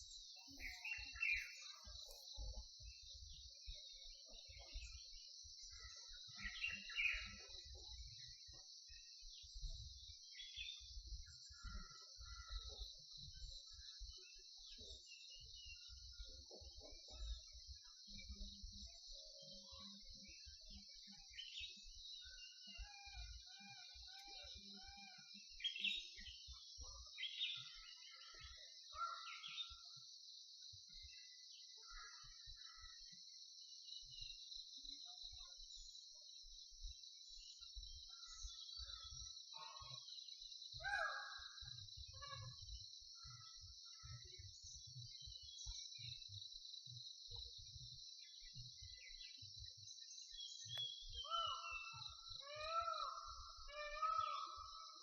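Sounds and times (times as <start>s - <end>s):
high-pitched insect chorus: 0.0s - 55.0s
bird calling: 40.8s - 41.4s, 50.7s - 55.0s.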